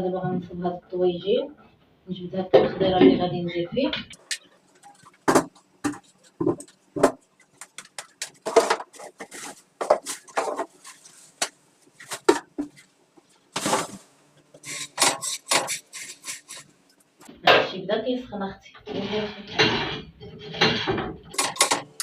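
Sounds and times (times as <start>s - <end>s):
pots and utensils clinking: 18.9s - 22.0s.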